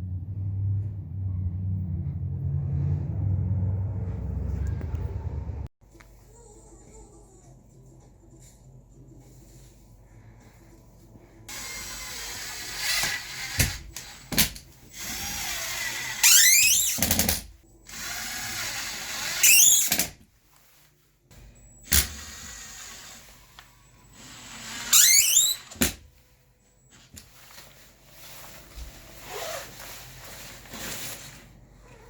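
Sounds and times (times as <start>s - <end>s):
power drill whining: 11.5s - 17.3s, 17.9s - 20.1s, 21.8s - 26.0s.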